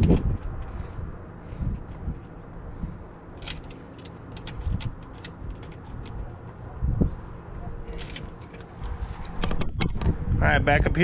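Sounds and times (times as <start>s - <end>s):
low rumble of handling noise: 0.0s - 10.4s
clicks and knocks of tool on fitting: 3.4s - 6.3s.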